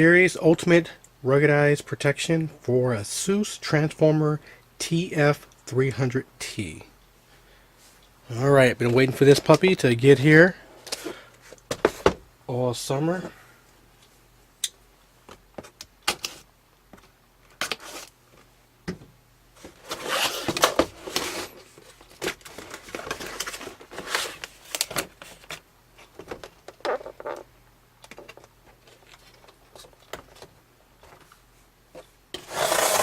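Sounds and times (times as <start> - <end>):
packaging rustling: 19.7 - 25.6.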